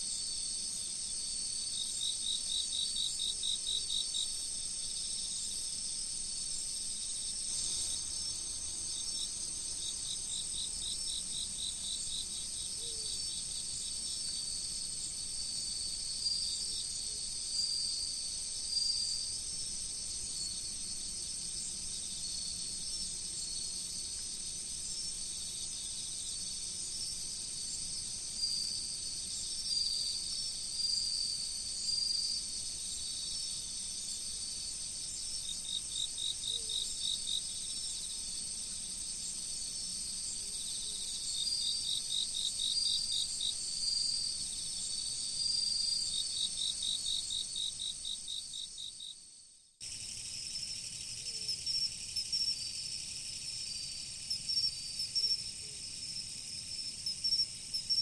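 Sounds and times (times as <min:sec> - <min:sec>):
crickets high-pitched ringing: 0:49.8 - 0:58.0
insect pulsed trill: 0:49.8 - 0:58.0.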